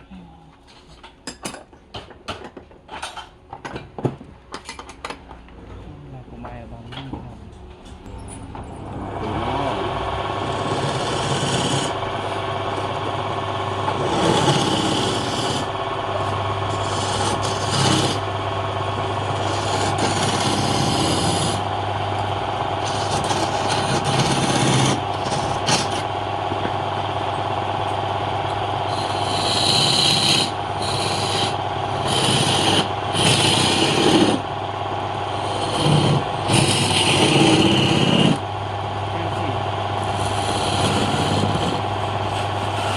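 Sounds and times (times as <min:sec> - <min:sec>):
wood lathe motor running: 0:08.8 - 0:42.9
cutting tool scraping wood: 0:10.4 - 0:13.2, 0:13.8 - 0:18.3, 0:19.2 - 0:21.7, 0:22.8 - 0:26.1, 0:28.9 - 0:34.5, 0:35.2 - 0:38.4, 0:40.0 - 0:42.9.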